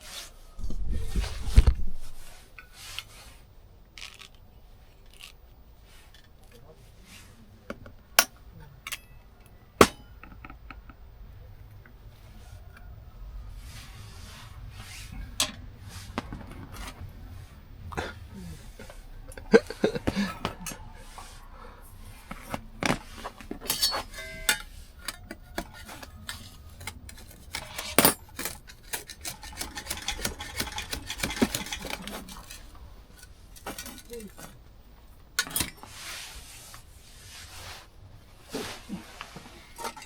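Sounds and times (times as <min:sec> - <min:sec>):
metal cooking utensils clinking: 0:08.2 - 0:10.5, 0:22.8 - 0:34.6, 0:35.4 - 0:36.0, 0:39.6 - 0:40.0.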